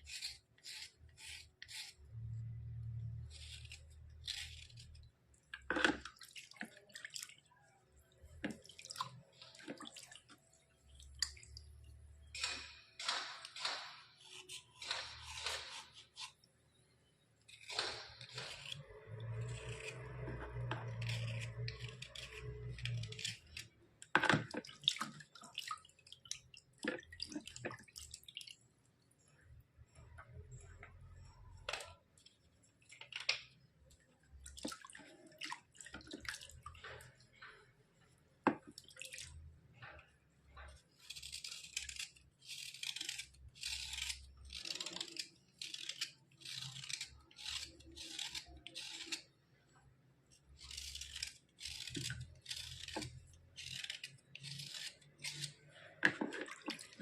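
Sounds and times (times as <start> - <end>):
slate pencils scraping: 0.0 - 2.0, 17.6 - 23.7, 41.0 - 49.3, 50.6 - 56.3
slate pencils clicking and snapping: 41.0 - 49.2.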